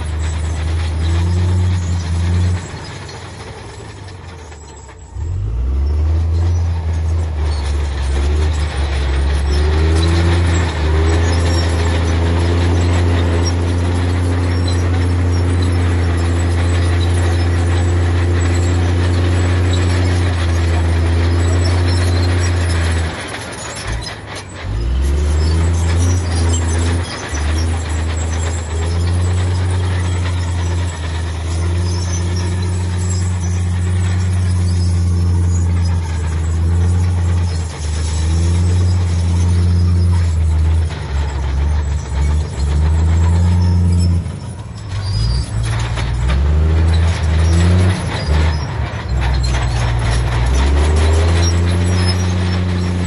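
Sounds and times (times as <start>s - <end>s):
heavy diesel engines droning: 0.0s - 53.0s.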